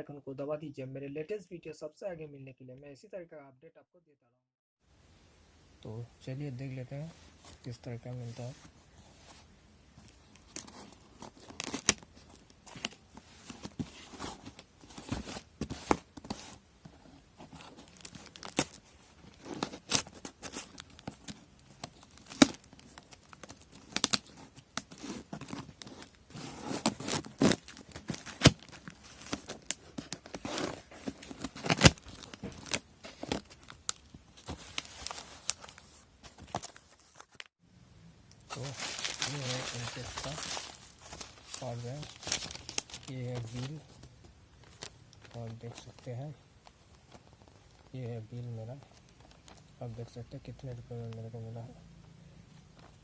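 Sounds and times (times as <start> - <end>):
packaging being torn and crumpled: 10.4 - 12.0, 17.7 - 26.2, 26.8 - 30.6, 31.3 - 35.8, 38.6 - 43.8.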